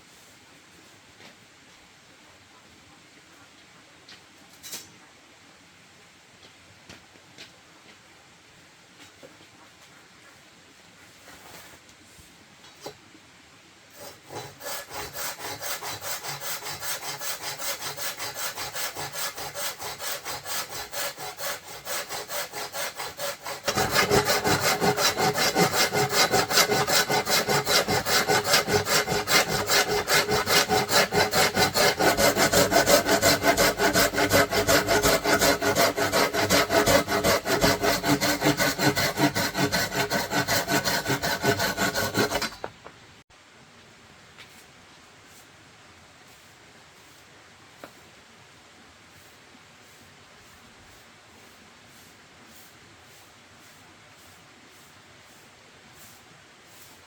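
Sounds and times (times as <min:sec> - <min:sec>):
hand saw cutting wood: 0:13.9 - 0:42.7.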